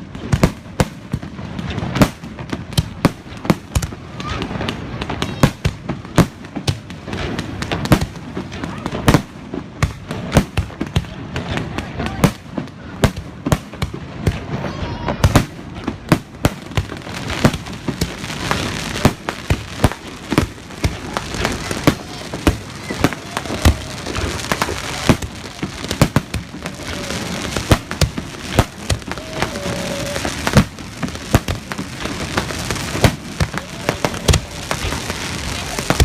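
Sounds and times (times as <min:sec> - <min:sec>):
fireworks bangs: 0:00.0 - 0:36.0
fireworks crackling: 0:00.0 - 0:36.0.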